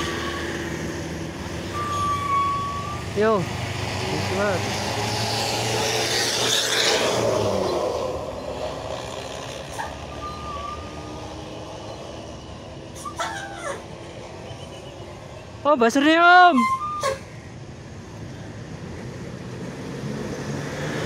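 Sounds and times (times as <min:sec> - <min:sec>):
large vehicle passing: 0:00.0 - 0:13.0
steady traffic noise: 0:00.0 - 0:21.0.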